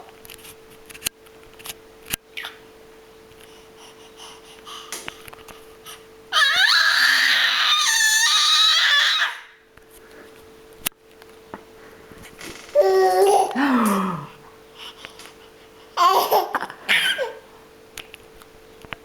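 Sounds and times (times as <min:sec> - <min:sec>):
baby squealing: 0:06.3 - 0:09.6, 0:16.0 - 0:17.4.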